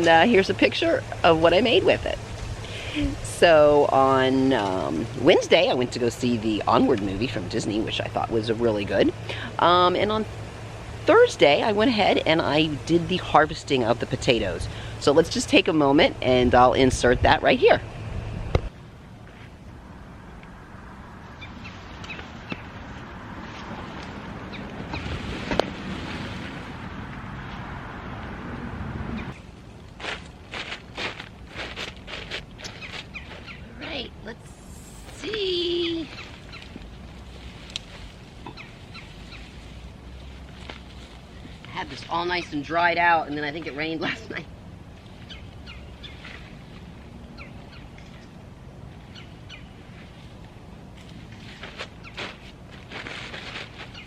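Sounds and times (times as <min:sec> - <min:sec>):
low outdoor rumble: 0:00.0 - 0:54.0
birds chirping: 0:21.3 - 0:23.1, 0:24.4 - 0:25.2, 0:32.6 - 0:34.1, 0:35.4 - 0:37.1, 0:38.4 - 0:39.8, 0:41.3 - 0:50.1.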